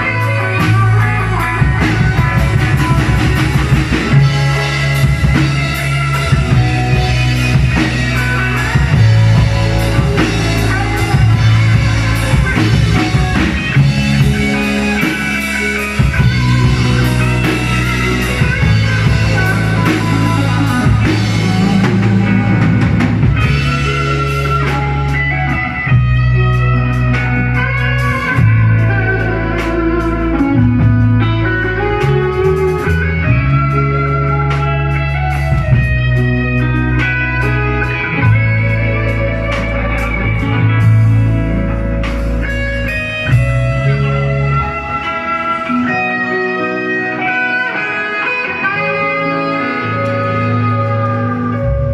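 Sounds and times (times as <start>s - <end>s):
held low bass notes: 0.0s - 47.8s, 48.8s - 51.9s
drum kit: 0.0s - 51.9s
electric guitar: 0.0s - 51.9s.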